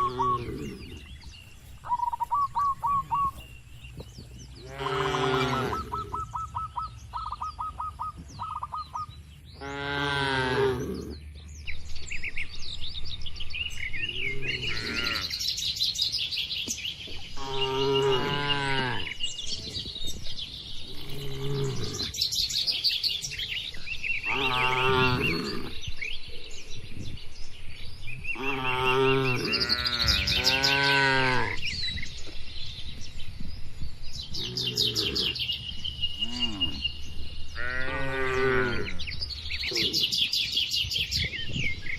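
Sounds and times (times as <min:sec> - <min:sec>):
birds chirping: 0:00.0 - 0:41.9
cattle mooing: 0:04.6 - 0:06.1, 0:24.3 - 0:25.8.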